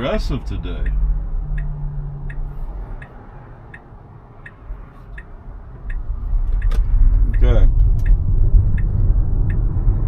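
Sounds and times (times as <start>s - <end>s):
car rolling rumble: 0.0s - 10.0s
turn signal ticking: 0.0s - 10.0s.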